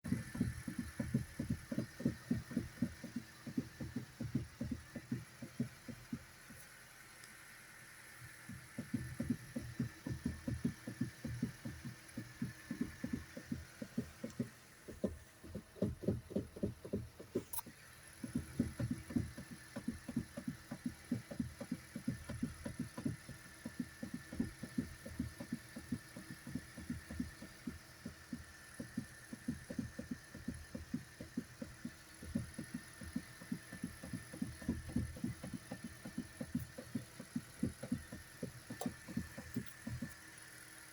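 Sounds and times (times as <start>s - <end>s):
steering knocking: 0.0s - 6.8s, 8.2s - 40.9s.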